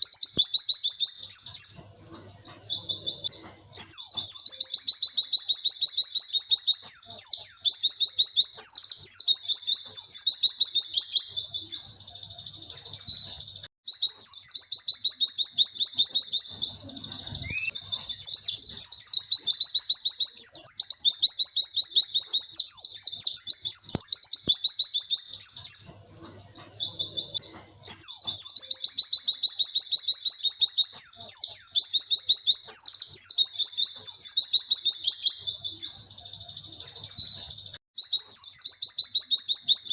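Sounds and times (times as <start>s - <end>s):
bird singing rapid high notes: 0.0s - 39.9s.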